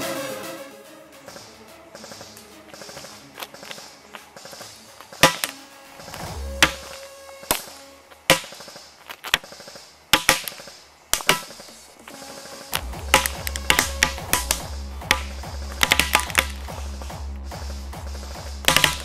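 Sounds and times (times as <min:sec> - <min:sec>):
airsoft gun shots: 0:04.4 - 0:11.7
music with pulsing bass: 0:05.6 - 0:07.3, 0:12.3 - 0:19.0.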